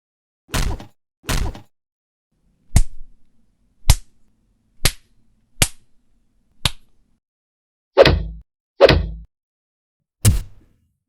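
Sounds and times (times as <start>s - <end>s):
punch sound effect: 0.5s - 1.7s, 10.2s - 10.7s.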